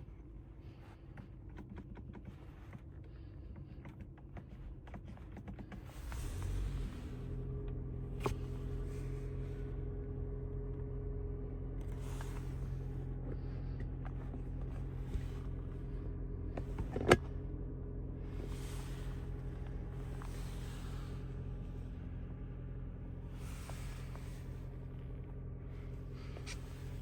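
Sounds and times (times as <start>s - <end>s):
car powertrain low hum: 0.0s - 27.0s
clicks in car cabin: 1.1s - 6.0s, 16.5s - 17.4s
road noise: 6.0s - 27.0s.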